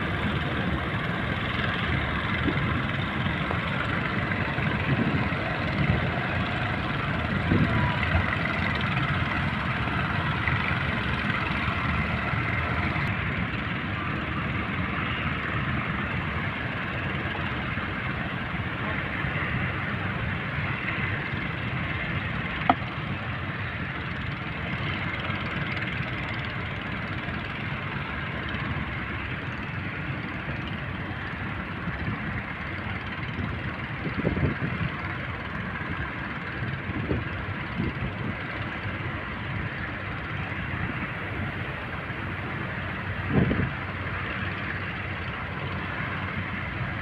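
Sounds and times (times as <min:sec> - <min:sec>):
boat engine rumble: 0:00.0 - 0:47.0
wind: 0:00.0 - 0:47.0.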